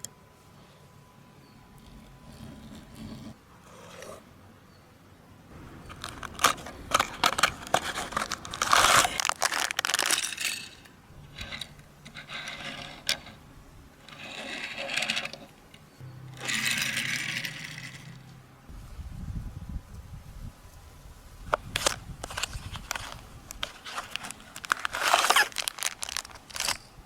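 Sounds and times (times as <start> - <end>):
packaging crinkling: 5.6 - 10.8, 21.5 - 27.0
toy cars clicking and tapping: 5.8 - 10.9.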